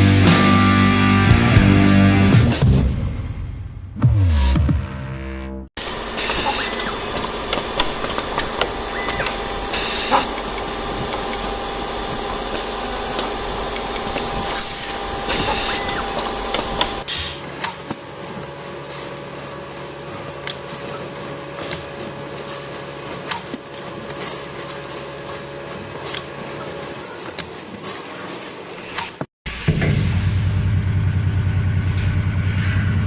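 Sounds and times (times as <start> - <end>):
machine hum: 5.8 - 17.1
workshop machine whine: 5.8 - 17.1.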